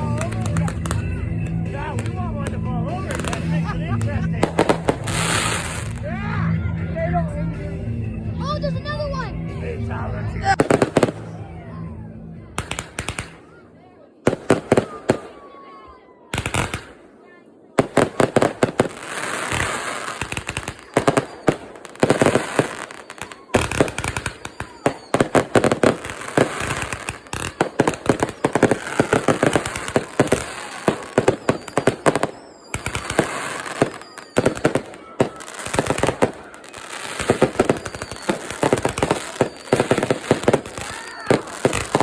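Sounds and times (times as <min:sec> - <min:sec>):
fireworks cracking and banging: 0:00.0 - 0:06.2, 0:10.5 - 0:11.6, 0:12.6 - 0:13.6, 0:14.2 - 0:42.0.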